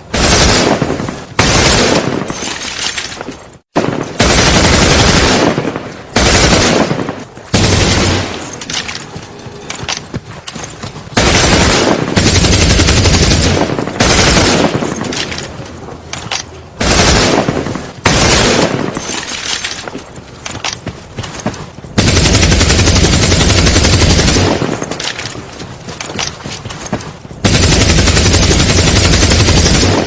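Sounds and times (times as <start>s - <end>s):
machine gun automatic fire: 0.2s - 2.5s, 3.8s - 8.7s, 11.2s - 15.4s, 16.8s - 19.5s, 22.0s - 25.1s, 27.4s - 30.0s.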